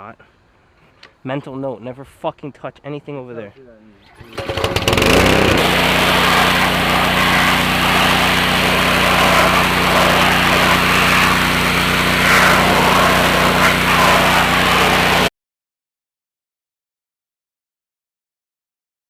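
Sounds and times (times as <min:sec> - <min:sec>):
pressure washer engine running: 0:04.0 - 0:15.3.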